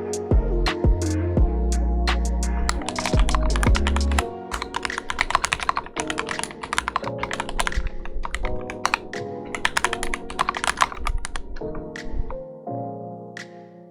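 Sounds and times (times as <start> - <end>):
background music: 0.0 - 13.9
mechanical keyboard typing: 2.7 - 12.2.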